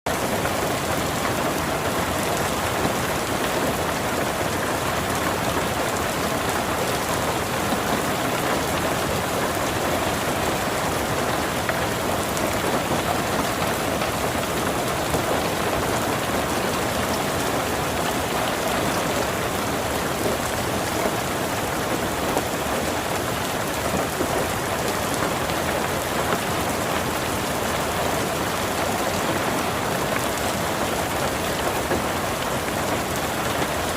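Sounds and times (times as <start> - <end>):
heavy rain falling: 0.1 - 33.9.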